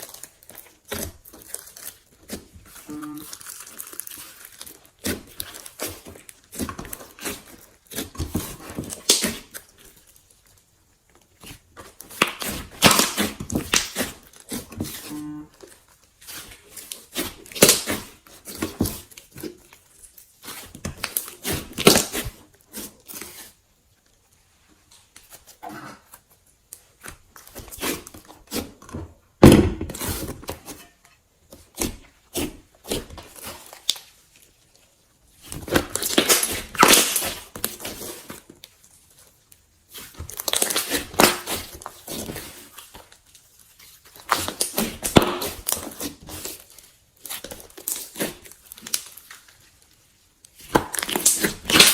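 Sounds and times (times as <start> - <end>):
slime crackling pops: 50.7 - 51.9.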